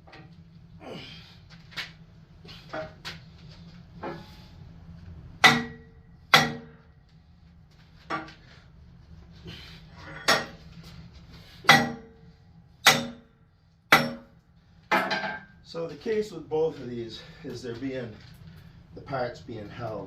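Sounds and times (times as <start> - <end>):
hammer striking metal: 5.4 - 6.8, 10.2 - 10.6, 11.6 - 12.2, 12.8 - 13.3, 13.9 - 15.5.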